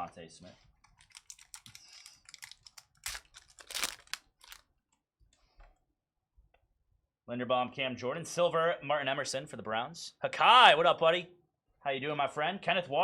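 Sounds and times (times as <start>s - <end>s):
cards clicking: 1.0s - 4.6s
wrapper crinkling and tearing: 1.0s - 4.6s.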